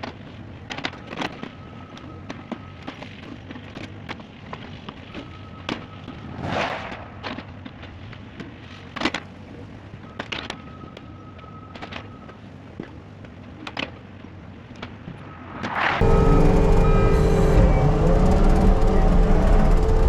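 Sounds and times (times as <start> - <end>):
rush of noise: 15.2 - 20.0
diesel engine running: 16.0 - 20.0.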